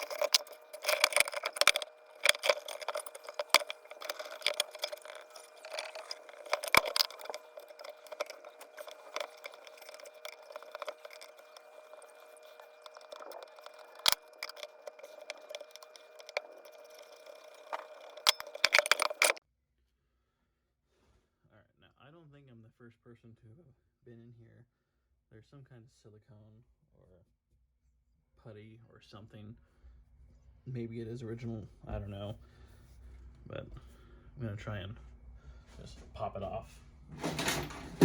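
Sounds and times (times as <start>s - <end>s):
metal tools clinking and rattling: 0.0s - 19.4s, 37.2s - 38.0s.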